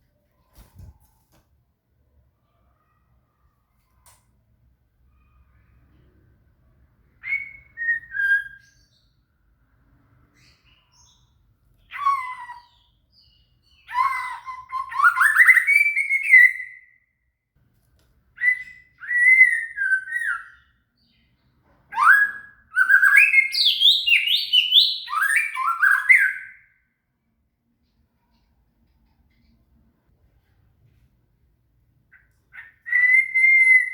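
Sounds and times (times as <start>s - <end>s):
bird singing whistled notes: 7.2s - 9.2s, 11.9s - 17.0s, 18.4s - 21.2s, 21.9s - 26.8s, 32.2s - 33.9s.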